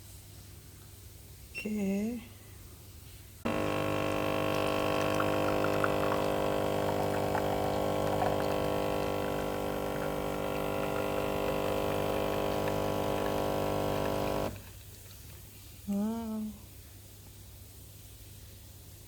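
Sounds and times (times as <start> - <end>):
coffee machine pump humming: 3.5 - 14.8.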